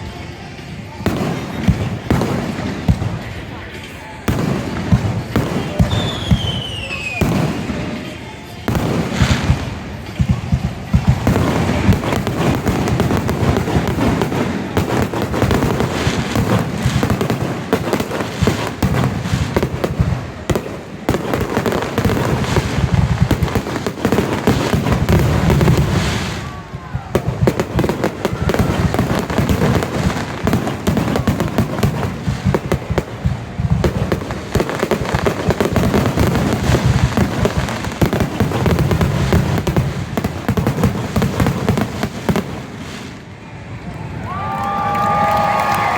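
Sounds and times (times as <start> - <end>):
fireworks bangs and crackling: 0.0 - 45.9.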